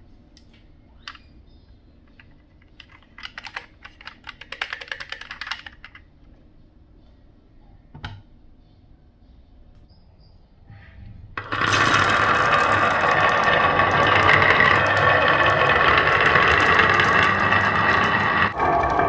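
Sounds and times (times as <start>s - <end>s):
glass marbles clattering on wood: 11.4s - 18.6s.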